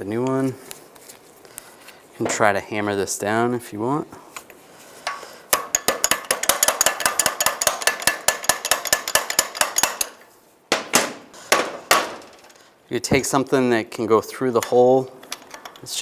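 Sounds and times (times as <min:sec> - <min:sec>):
hammer tapping metal pin: 0:05.1 - 0:12.2
loud hammer strikes: 0:05.6 - 0:12.4.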